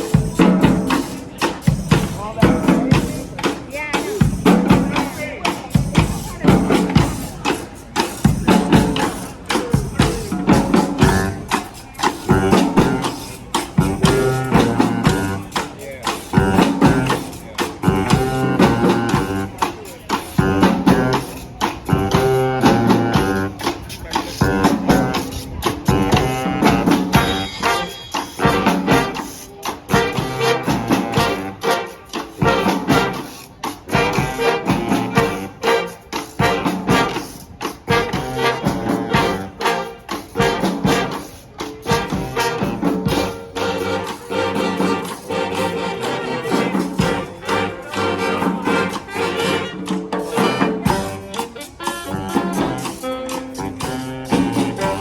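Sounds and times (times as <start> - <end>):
brass band playing latin groove: 0.0 - 55.0
drums keeping a steady beat: 0.0 - 55.0.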